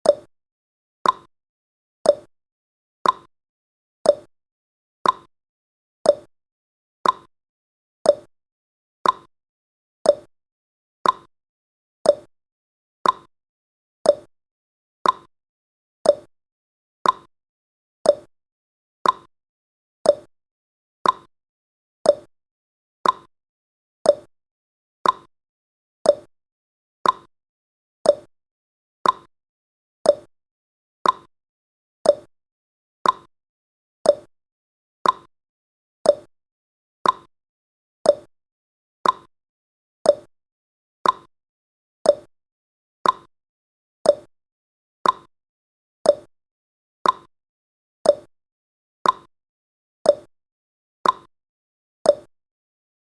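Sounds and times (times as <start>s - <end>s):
timer ticking: 0.0s - 0.3s, 1.0s - 1.3s, 2.1s - 2.3s, 3.0s - 3.3s, 4.1s - 4.3s, 5.0s - 5.3s, 6.1s - 6.3s, 7.0s - 7.3s, 8.1s - 8.3s, 9.0s - 9.3s, 10.1s - 10.3s, 11.0s - 11.3s, 12.1s - 12.3s, 13.0s - 13.3s, 14.1s - 14.3s, 15.0s - 15.3s, 16.0s - 16.3s, 17.0s - 17.3s, 18.0s - 18.3s, 19.0s - 19.3s, 20.0s - 20.3s, 21.0s - 21.3s, 22.0s - 22.3s, 23.0s - 23.3s, 24.1s - 24.3s, 25.0s - 25.3s, 26.0s - 26.3s, 27.0s - 27.3s, 28.0s - 28.3s, 29.0s - 29.3s, 30.0s - 30.3s, 31.0s - 31.3s, 32.0s - 32.3s, 33.0s - 33.3s, 34.0s - 34.3s, 35.0s - 35.3s, 36.0s - 36.3s, 37.0s - 37.3s, 38.0s - 38.3s, 39.0s - 39.3s, 40.1s - 40.3s, 41.0s - 41.3s, 42.0s - 42.3s, 43.0s - 43.3s, 44.1s - 44.3s, 45.0s - 45.3s, 46.1s - 46.3s, 47.0s - 47.3s, 48.0s - 48.3s, 49.0s - 49.3s, 50.1s - 50.3s, 51.0s - 51.3s, 52.1s - 52.3s.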